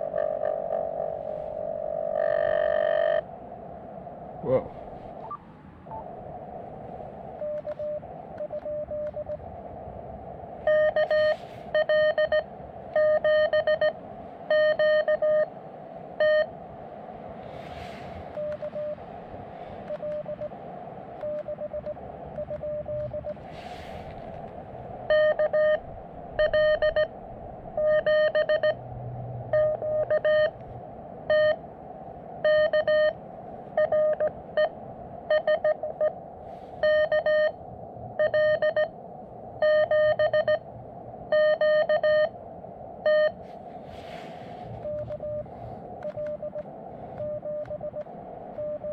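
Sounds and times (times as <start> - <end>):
radio hiss: 0.0 - 3.3, 43.3 - 48.9
morse code tone: 1.9 - 3.2, 10.7 - 12.4, 13.0 - 15.5, 16.2 - 16.5, 25.1 - 25.8, 26.4 - 27.1, 27.8 - 28.8, 29.5 - 30.6, 31.3 - 31.6, 32.4 - 33.2, 33.8 - 34.7, 35.3 - 36.1, 36.8 - 37.6, 38.2 - 38.9, 39.6 - 40.6, 41.3 - 42.4, 43.1 - 43.4, 47.2 - 48.0, 48.6 - 48.9.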